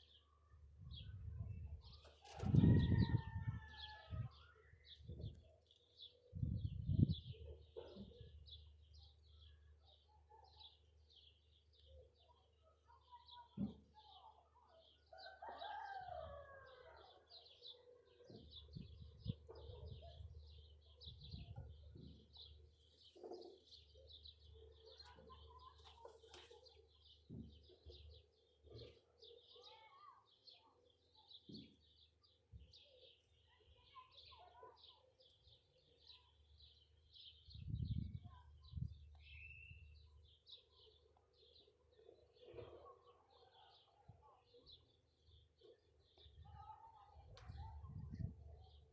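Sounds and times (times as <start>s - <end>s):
small birds chirping: 18.3s - 48.9s.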